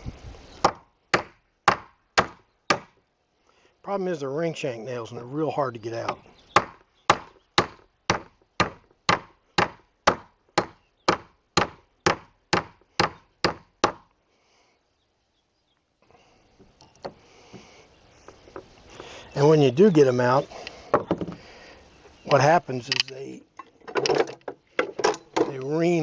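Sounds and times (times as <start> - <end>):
hammer striking nails in wood: 6.6 - 14.1.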